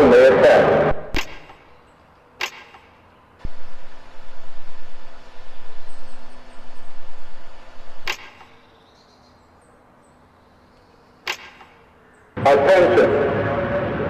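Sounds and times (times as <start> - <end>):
sharp click: 1.1 - 1.8, 2.4 - 3.0, 8.0 - 8.7, 10.8 - 11.8
fluttering warning siren: 3.4 - 8.5.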